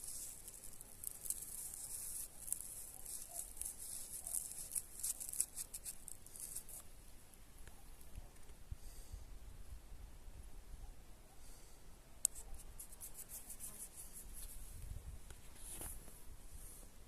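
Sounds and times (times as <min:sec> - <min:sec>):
dry high-pitched rustling and crackling: 0:00.0 - 0:06.9, 0:12.2 - 0:14.6.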